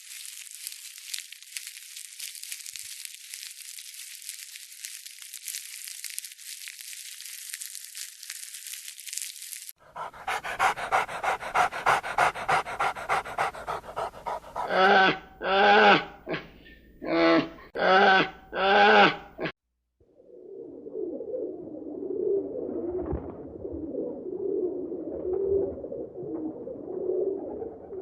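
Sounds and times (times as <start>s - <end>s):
dog panting rapidly: 9.8s - 15.0s.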